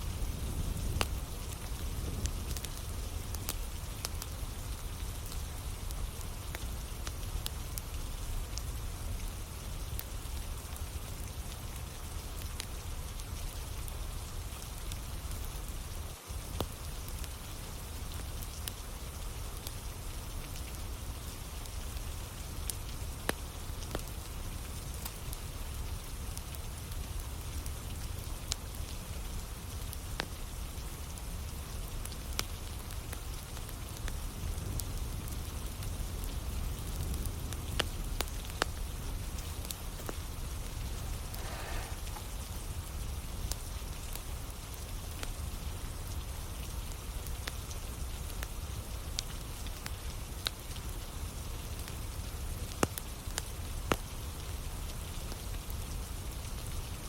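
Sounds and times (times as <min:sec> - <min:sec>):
fire crackling and popping: 0:00.0 - 0:57.0
steady rain: 0:00.0 - 0:57.0.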